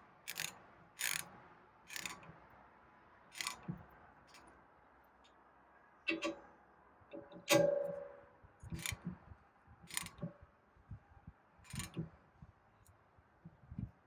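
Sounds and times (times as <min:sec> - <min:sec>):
ratchet wrench clicking: 0:00.3 - 0:01.3, 0:01.9 - 0:02.2, 0:03.4 - 0:03.6, 0:08.8 - 0:09.0, 0:09.9 - 0:10.2, 0:11.7 - 0:12.0.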